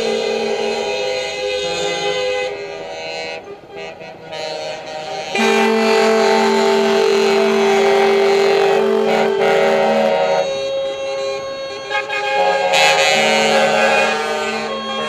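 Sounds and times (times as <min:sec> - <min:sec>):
truck air horns: 0:00.0 - 0:15.0.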